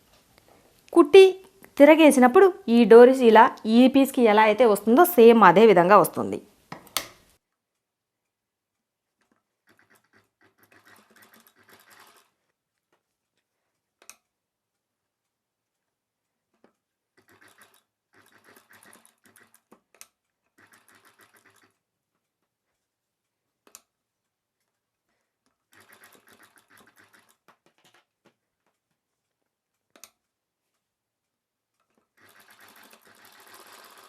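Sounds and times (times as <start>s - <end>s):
sewing machine stitching: 9.6s - 12.5s, 17.2s - 21.8s, 25.6s - 28.0s, 32.0s - 34.0s.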